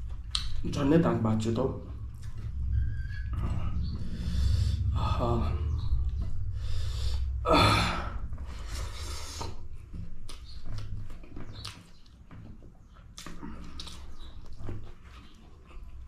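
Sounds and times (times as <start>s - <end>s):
person gasping and sighing: 7.3s - 8.3s.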